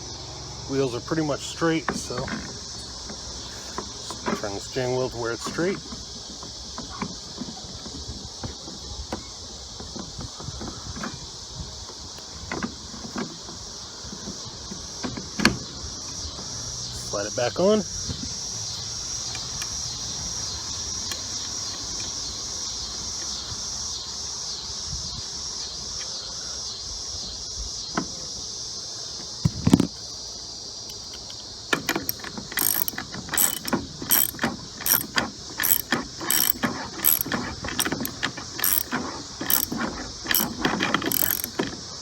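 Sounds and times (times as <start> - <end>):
crickets chirring: 0.0 - 42.0
thump: 29.4 - 29.9
socket ratchet clicking: 30.9 - 41.7.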